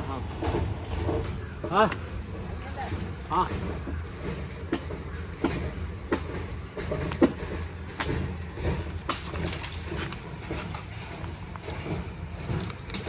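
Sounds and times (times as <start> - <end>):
sharp knocks and clacks: 2.9 - 13.0.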